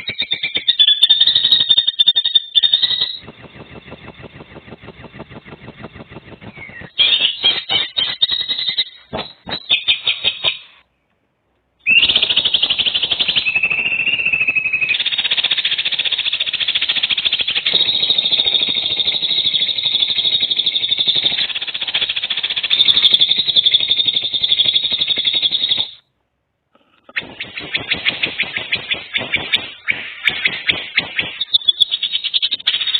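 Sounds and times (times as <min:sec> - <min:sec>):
bird buzzing trill: 0:02.6 - 0:08.8, 0:14.8 - 0:26.0.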